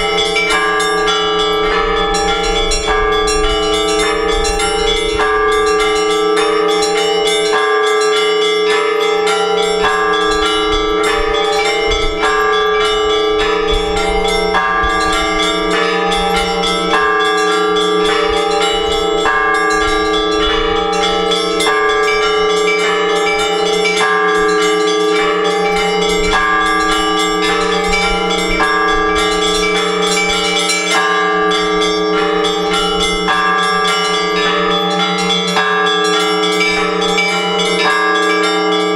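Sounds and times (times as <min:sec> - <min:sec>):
large bells humming: 0:00.0 - 0:38.9
small bells striking: 0:00.0 - 0:38.9.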